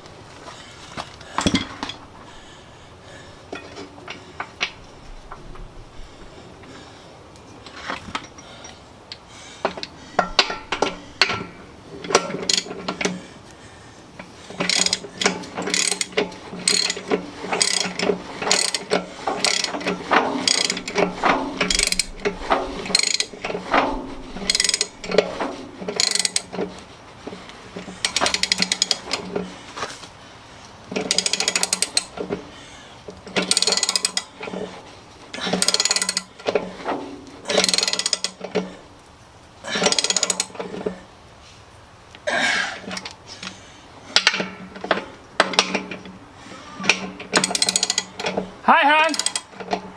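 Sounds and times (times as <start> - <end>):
ratchet wrench clicking: 12.1 - 13.2, 14.5 - 26.5, 28.0 - 29.2, 31.0 - 32.2, 33.4 - 34.3, 35.4 - 36.4, 37.5 - 38.4, 39.7 - 40.5, 47.3 - 48.3, 49.0 - 49.5.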